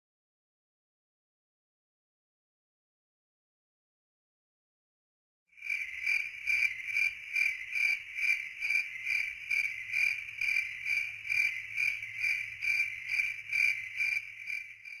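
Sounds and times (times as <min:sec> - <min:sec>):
cricket chirping: 0:05.6 - 0:15.0.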